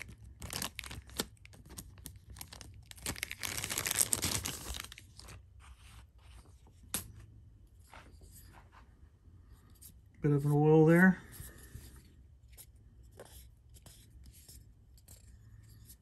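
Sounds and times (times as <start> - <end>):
packaging rustling and crinkling: 0.0 - 5.4.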